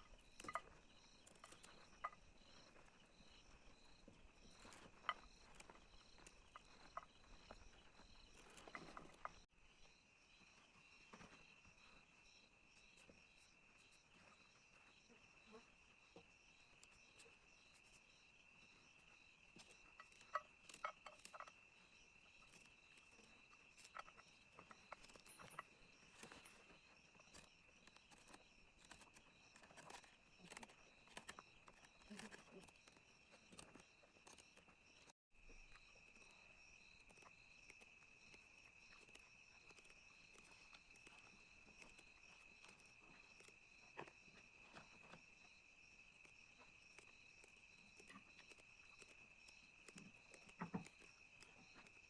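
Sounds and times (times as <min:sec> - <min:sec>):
crickets trilling: 0:00.0 - 0:52.0
faint clicks and taps: 0:35.7 - 0:52.0.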